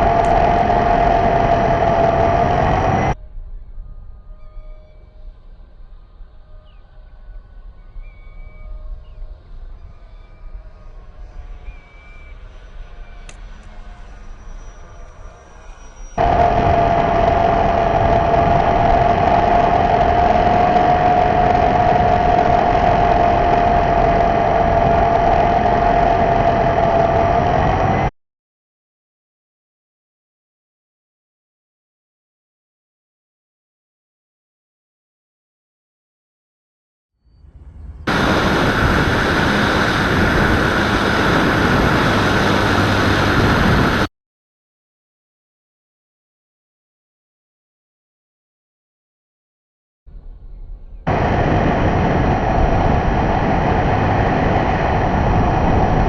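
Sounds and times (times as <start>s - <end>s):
model airplane motor drone: 0.0s - 3.2s, 4.0s - 28.1s, 38.1s - 44.1s, 51.1s - 56.0s.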